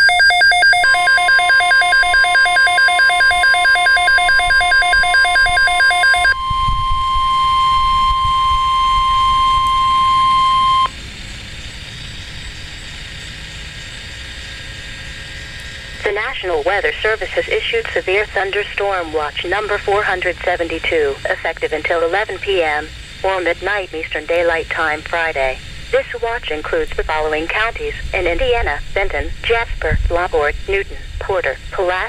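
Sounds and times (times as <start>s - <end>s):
electronic alert beeping: 0.0s - 10.9s
steady high alarm tone: 0.0s - 11.0s
faint radio hiss: 16.0s - 32.0s.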